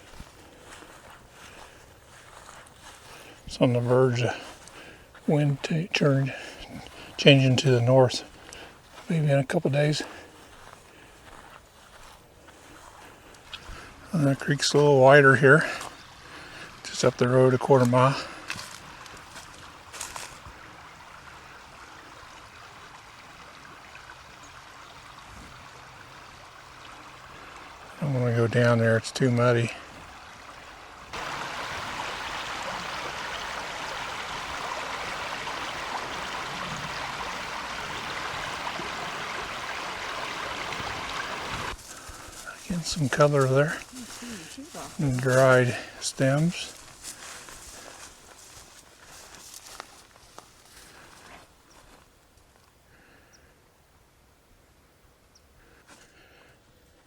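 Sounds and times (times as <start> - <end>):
soft steady hiss: 0.0 - 57.0
water rushing over rocks: 20.5 - 46.7.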